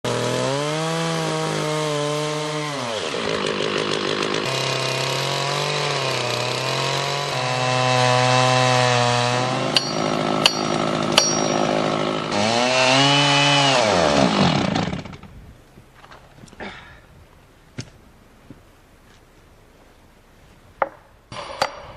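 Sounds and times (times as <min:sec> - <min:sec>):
chainsaw cutting a tree: 0:00.0 - 0:15.3.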